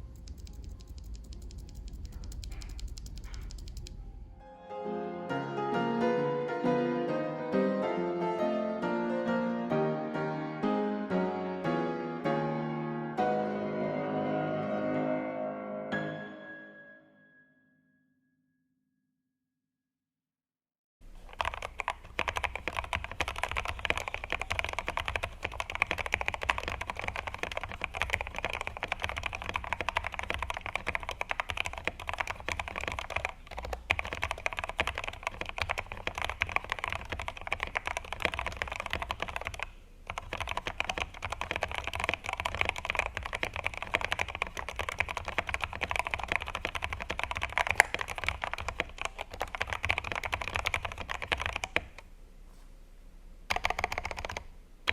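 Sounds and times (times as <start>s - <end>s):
fast mechanical keyboard typing: 0.0s - 4.0s, 21.2s - 52.0s, 53.5s - 54.9s.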